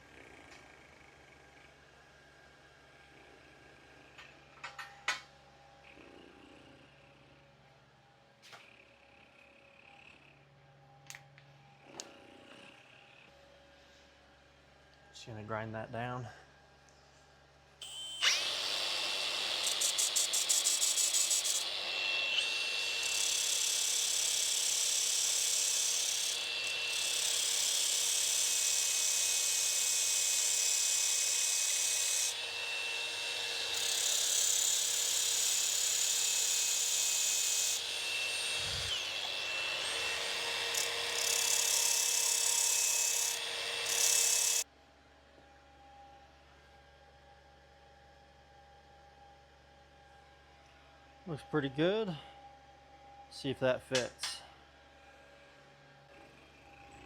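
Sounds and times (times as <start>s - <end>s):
power grinder grinding metal: 17.8s - 44.6s.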